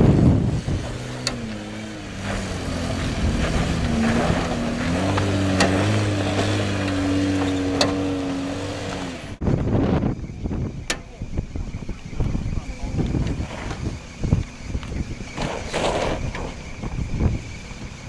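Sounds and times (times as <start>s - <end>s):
car engine driving: 0.0s - 18.0s
suspension clunk knocks: 4.1s - 8.2s.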